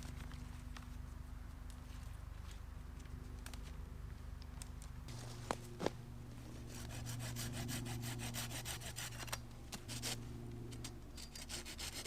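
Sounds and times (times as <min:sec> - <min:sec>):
steady low hum: 0:00.0 - 0:12.0
rasping strokes on wood: 0:06.7 - 0:09.2, 0:11.3 - 0:12.0.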